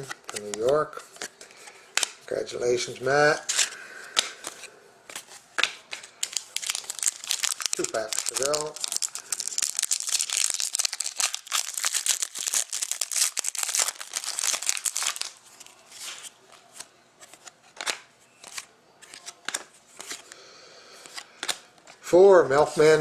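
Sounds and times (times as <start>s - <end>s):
cards clicking and rustling: 0.0s - 2.2s, 3.3s - 20.4s, 21.0s - 22.0s
card pack wrapper crinkling: 5.9s - 16.3s.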